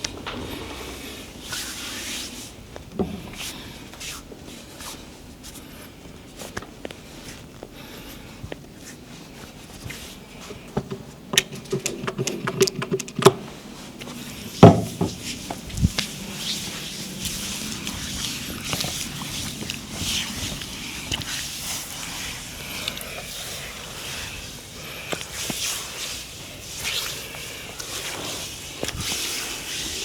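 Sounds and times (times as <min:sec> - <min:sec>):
loud thump: 0:14.6 - 0:15.3.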